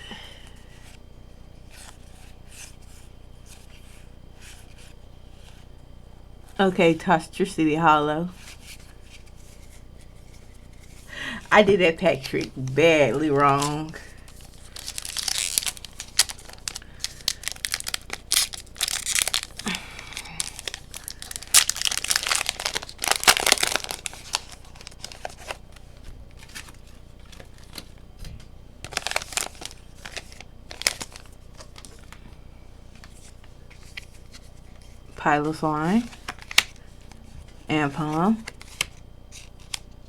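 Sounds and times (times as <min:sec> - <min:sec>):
foil wrapper crinkling and tearing: 0:13.2 - 0:28.0, 0:28.8 - 0:32.2, 0:36.0 - 0:37.2.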